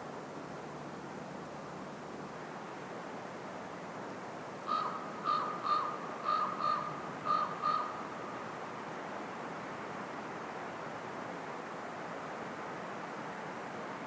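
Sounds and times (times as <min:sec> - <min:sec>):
steady background hiss: 0:00.0 - 0:14.0
bird calling: 0:04.7 - 0:08.1.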